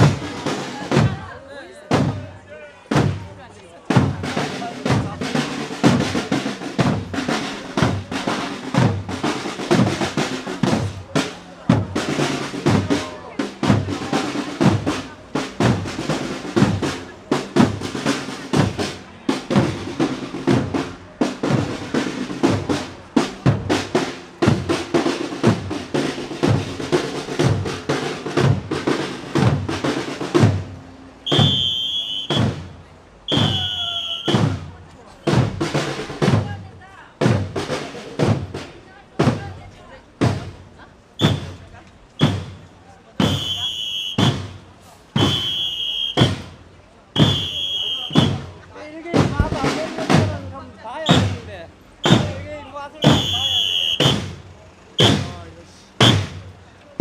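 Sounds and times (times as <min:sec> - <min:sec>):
marching drums: 0:00.0 - 0:57.0
high whistle blasts: 0:31.2 - 0:32.6, 0:33.3 - 0:34.5, 0:41.2 - 0:41.4, 0:43.2 - 0:44.5, 0:45.2 - 0:46.4, 0:47.2 - 0:48.4, 0:53.0 - 0:54.2.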